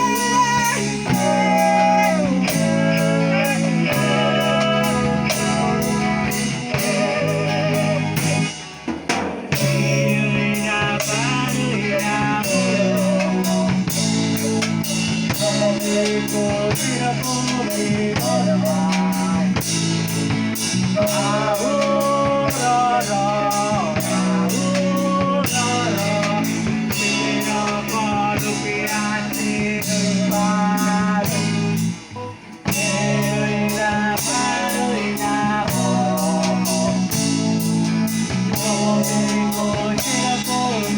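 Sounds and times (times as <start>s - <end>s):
person singing: 0.0s - 8.9s, 9.5s - 19.8s, 20.9s - 40.9s
pan pipes: 0.0s - 10.9s
acoustic guitar: 0.0s - 40.9s.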